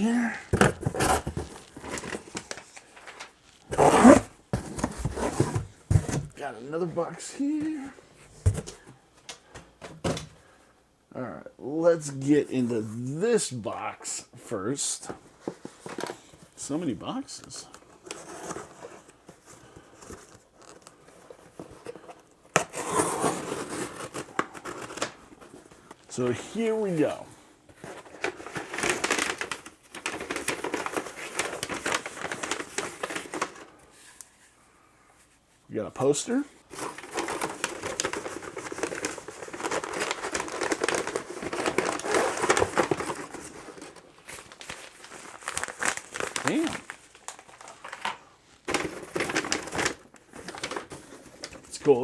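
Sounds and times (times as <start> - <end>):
packaging crinkling by hand: 0.0 - 4.1, 27.8 - 33.8, 36.7 - 52.0
cardboard scraping: 0.5 - 2.6, 3.7 - 6.4, 21.4 - 25.8
cardboard rubbing and rustling: 0.5 - 2.7, 3.7 - 6.4, 18.0 - 25.8, 26.6 - 33.6, 36.7 - 47.7, 48.7 - 51.6
cardboard cracking: 0.5 - 2.8, 27.8 - 33.6, 36.8 - 51.6.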